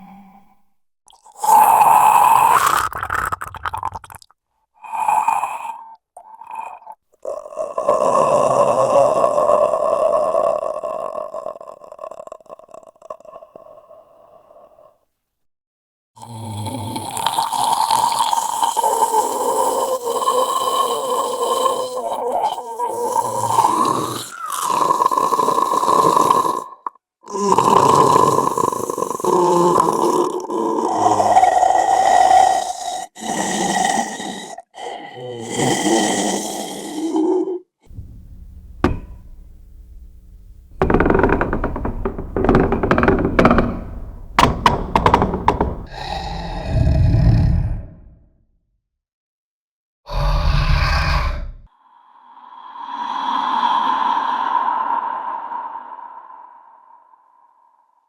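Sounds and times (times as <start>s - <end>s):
creature growling and groaning: 45.9s - 48.0s, 50.1s - 51.7s.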